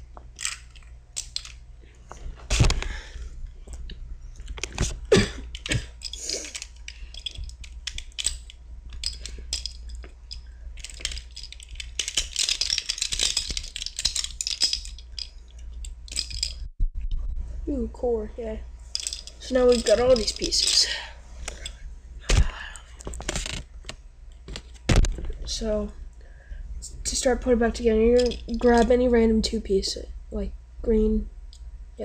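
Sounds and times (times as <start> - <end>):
plastic pieces knocking: 0.2 - 1.6, 4.5 - 15.3, 16.1 - 16.6, 19.0 - 20.9, 28.2 - 28.9.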